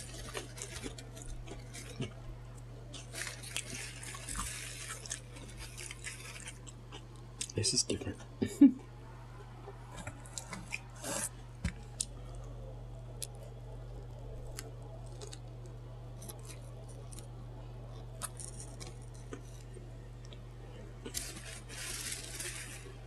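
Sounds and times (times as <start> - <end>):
chewing a crunchy sandwich: 0.0 - 7.6, 9.9 - 23.0
low steady hum: 0.0 - 23.0.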